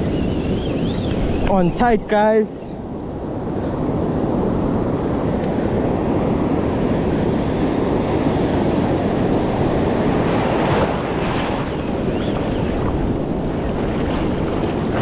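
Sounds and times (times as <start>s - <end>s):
wind buffeting microphone: 0.0s - 15.0s
surf washing against rocks: 6.5s - 15.0s.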